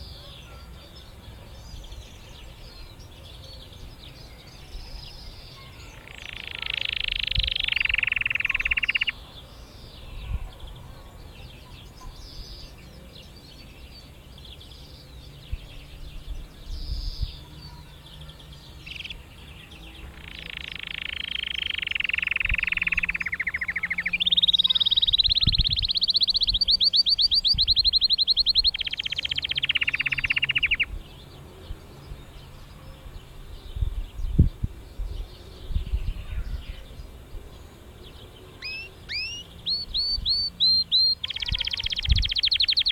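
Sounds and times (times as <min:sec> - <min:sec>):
canary singing: 0:01.8 - 0:09.2, 0:17.0 - 0:31.2, 0:38.1 - 0:42.9.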